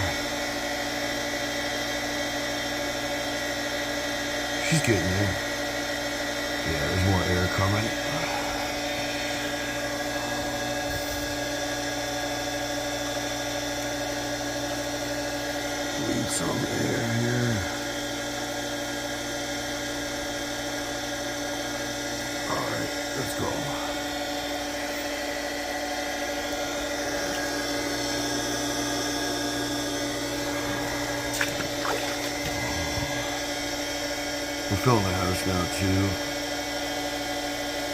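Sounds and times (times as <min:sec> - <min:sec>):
pump motor humming: 0:00.0 - 0:37.9
air through water line: 0:30.1 - 0:34.0.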